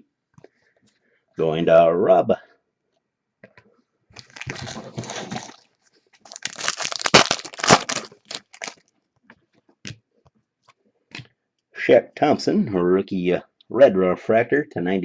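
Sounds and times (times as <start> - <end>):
foil wrappers crinkling and tearing: 4.2 - 8.9.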